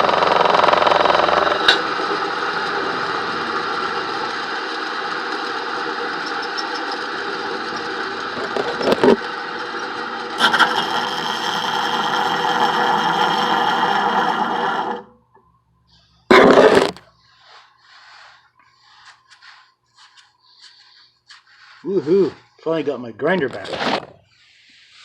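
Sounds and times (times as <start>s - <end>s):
loud clatter: 0.0s - 15.0s, 16.3s - 17.0s
bench grinder running: 0.0s - 15.1s.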